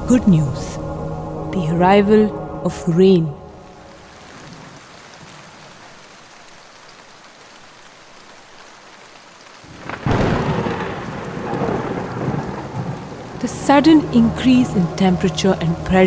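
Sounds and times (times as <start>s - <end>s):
steady rain: 0.0s - 16.0s
thunder crack and rumble: 9.7s - 13.9s.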